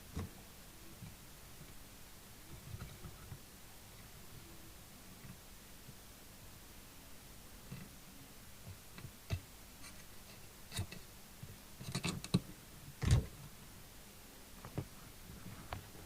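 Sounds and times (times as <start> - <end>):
light clicks and scrapes: 2.5 - 3.4, 11.8 - 12.4.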